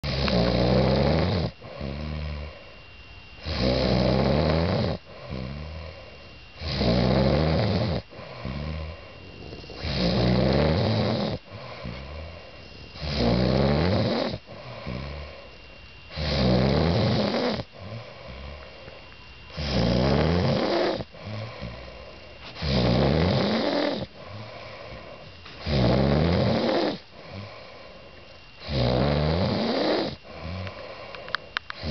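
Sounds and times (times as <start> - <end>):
man snoring: 0.0 - 2.6, 3.4 - 15.4, 16.1 - 18.7, 19.5 - 27.9, 28.6 - 31.2
quiet breathing: 1.5 - 3.5, 5.0 - 6.7, 8.0 - 16.2, 17.2 - 22.7, 23.5 - 25.7, 26.6 - 28.7, 29.9 - 31.9.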